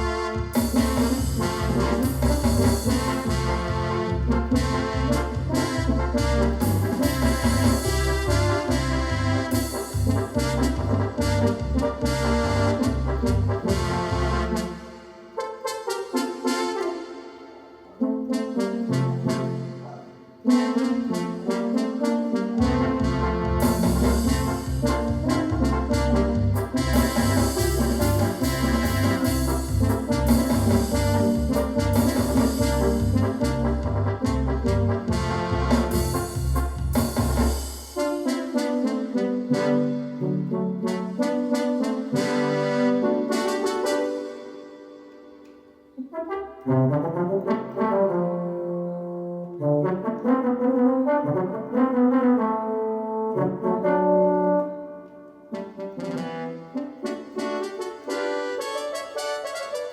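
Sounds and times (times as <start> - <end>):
percussion hits: 0.0 - 14.0, 22.6 - 38.3
pulsing bass line: 0.0 - 14.6, 22.6 - 37.5
synthesizer brass-like melody: 0.0 - 59.9.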